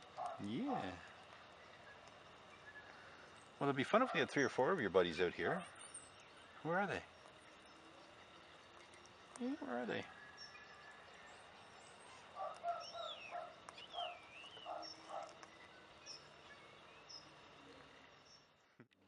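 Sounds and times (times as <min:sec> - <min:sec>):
clipped bird calls: 0:00.1 - 0:18.8.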